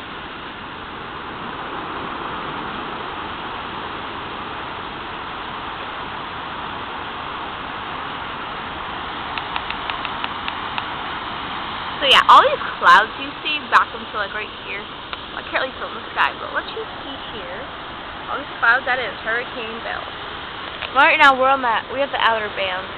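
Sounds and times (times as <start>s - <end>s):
heavy surf breaking: 0.0s - 22.9s
wind: 0.0s - 22.9s
small clicks: 9.3s - 10.9s.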